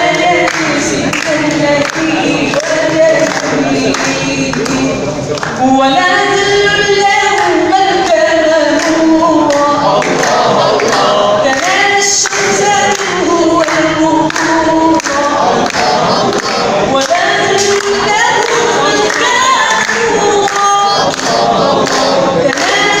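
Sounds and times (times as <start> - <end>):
man singing: 0.0 - 5.2
choir-like layered voices: 0.0 - 23.0.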